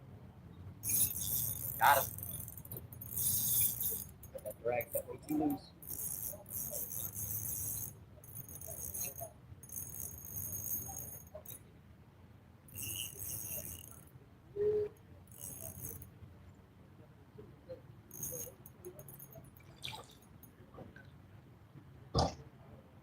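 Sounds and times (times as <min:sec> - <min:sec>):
fishing reel drag buzzing: 0:00.8 - 0:05.0, 0:05.8 - 0:11.6, 0:12.7 - 0:14.1, 0:15.3 - 0:16.1, 0:18.1 - 0:19.5.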